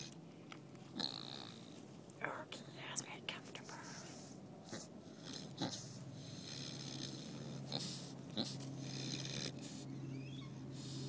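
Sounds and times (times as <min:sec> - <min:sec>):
boar snoring: 0:00.9 - 0:01.8, 0:04.6 - 0:10.0.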